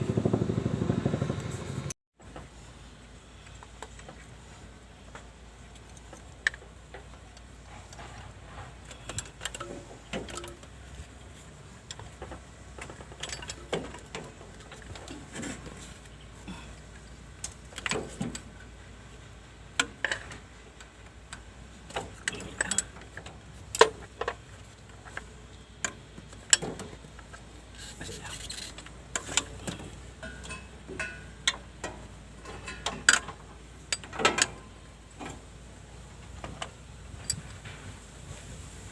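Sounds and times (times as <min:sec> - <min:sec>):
metal tools clinking: 0:12.9 - 0:15.6, 0:22.0 - 0:23.2, 0:27.8 - 0:31.6, 0:32.4 - 0:35.3.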